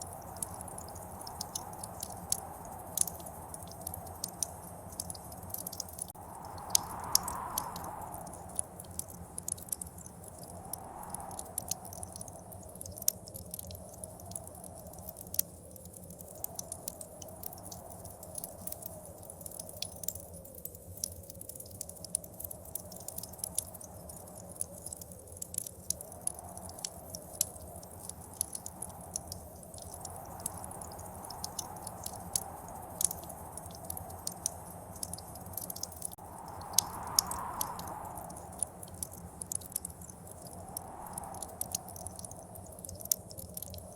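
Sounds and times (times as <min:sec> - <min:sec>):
blizzard wind howling: 0:00.0 - 0:12.9, 0:26.1 - 0:43.9
wood fire crackling and popping: 0:00.0 - 0:43.9.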